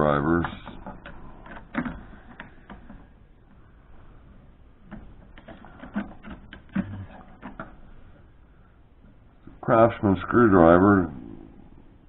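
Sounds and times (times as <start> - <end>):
screwdrivers clicking and knocking: 0.0 - 3.2, 4.8 - 7.8.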